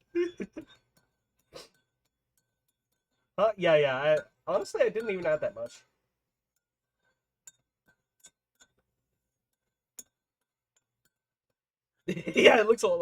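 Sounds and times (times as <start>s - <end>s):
spoon clinking against cup: 7.0s - 8.8s, 9.6s - 10.2s.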